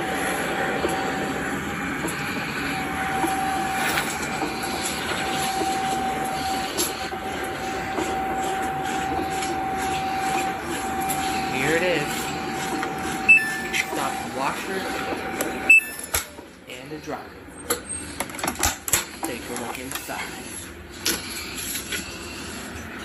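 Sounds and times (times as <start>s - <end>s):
washer and dryer whirring: 0.0s - 23.0s.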